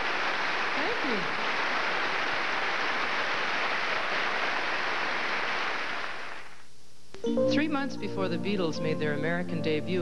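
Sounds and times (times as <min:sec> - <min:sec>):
audience applauding: 0:00.0 - 0:06.6.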